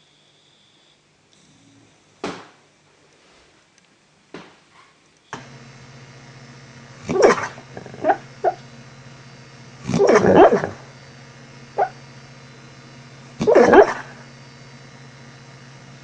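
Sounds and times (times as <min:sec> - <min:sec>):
dog barking: 0:07.1 - 0:08.6, 0:10.0 - 0:10.8, 0:11.8 - 0:12.0, 0:13.4 - 0:14.2.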